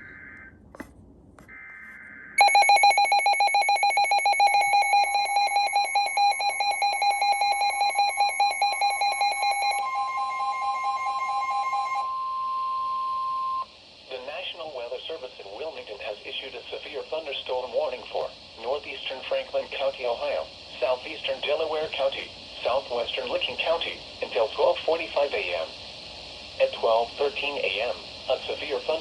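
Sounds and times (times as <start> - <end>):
digital data bursts: 2.4 - 9.8
two-tone alert signal: 2.4 - 12.4
single-pitch warning alarm tone: 2.4 - 13.7.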